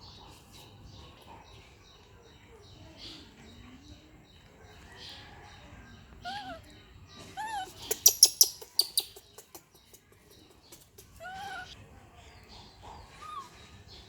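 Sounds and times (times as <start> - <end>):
baby monkey calling: 7.4 - 9.6, 11.2 - 11.8.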